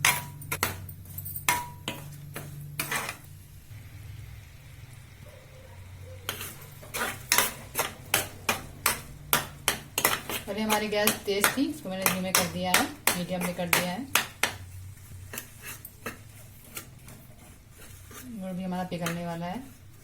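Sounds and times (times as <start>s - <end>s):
spoon scraping a pan: 0.0s - 3.5s, 6.2s - 20.0s.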